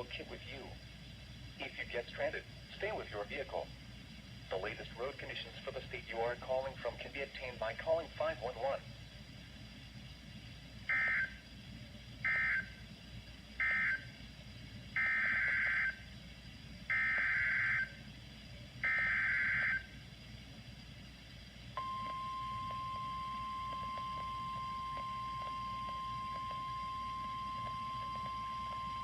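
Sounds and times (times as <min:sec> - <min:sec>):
warbling digital data bursts: 0:00.0 - 0:29.0
steady warning alarm tone: 0:10.8 - 0:11.5, 0:12.2 - 0:12.8, 0:13.5 - 0:16.1, 0:16.8 - 0:18.2, 0:18.8 - 0:20.2, 0:21.7 - 0:29.0.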